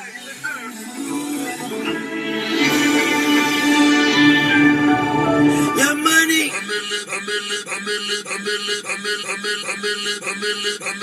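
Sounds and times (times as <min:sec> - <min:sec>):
hip hop music on car stereo: 0:00.0 - 0:06.5.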